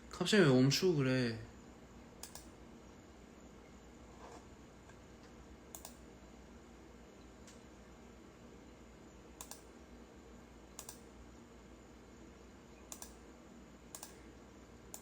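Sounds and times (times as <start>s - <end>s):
soft double clicks: 2.2s - 2.5s, 5.7s - 6.0s, 9.4s - 9.7s, 10.8s - 11.0s, 12.9s - 13.2s, 13.9s - 14.2s.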